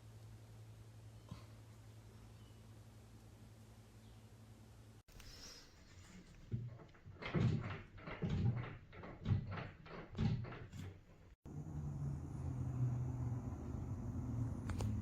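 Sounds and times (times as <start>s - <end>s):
wooden knocks and bangs: 6.5s - 11.4s.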